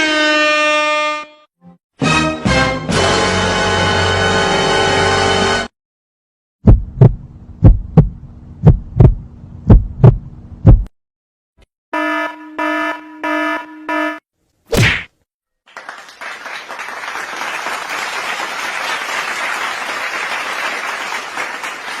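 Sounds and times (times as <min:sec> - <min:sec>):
heartbeat thumps: 0:06.6 - 0:10.9.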